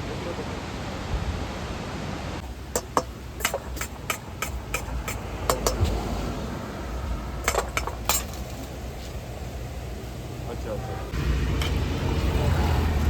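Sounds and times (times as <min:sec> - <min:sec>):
utensils clinking on dishes: 0:02.7 - 0:05.8, 0:07.4 - 0:08.8.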